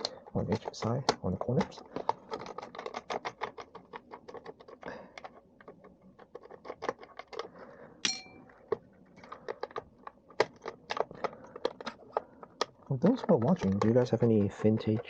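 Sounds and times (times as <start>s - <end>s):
ringing metallic clink: 8.0s - 8.4s.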